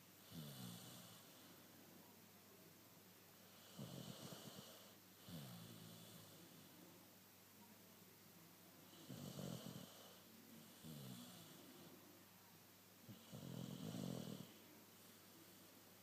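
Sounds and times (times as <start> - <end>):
dog snoring: 0.2 - 1.5, 3.5 - 6.4, 8.9 - 11.6, 13.1 - 14.6.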